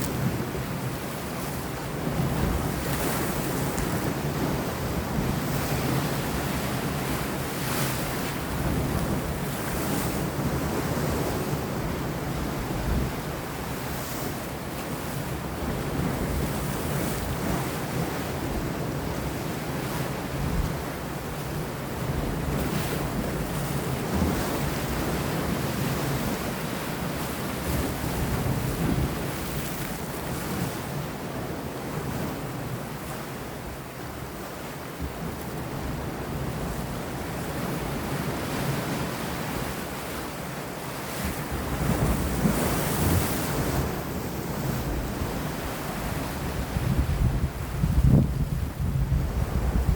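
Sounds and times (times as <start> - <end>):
waves breaking against rocks: 35.1 - 49.9
wind on microphone: 41.0 - 49.9.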